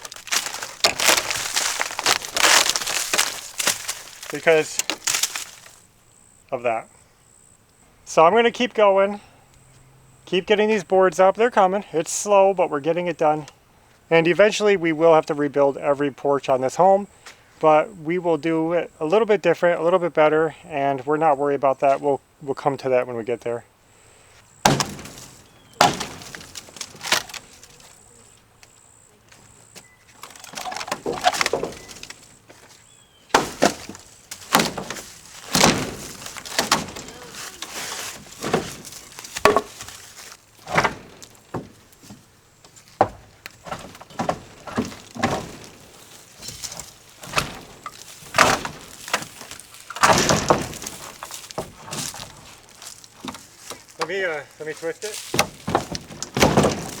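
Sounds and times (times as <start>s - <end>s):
wooden boards knocking and cracking: 0.0s - 5.8s, 24.6s - 28.7s, 29.3s - 57.0s.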